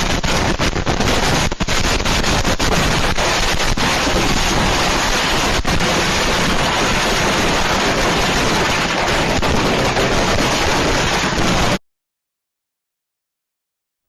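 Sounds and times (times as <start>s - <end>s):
loud static hiss: 0.0s - 11.8s.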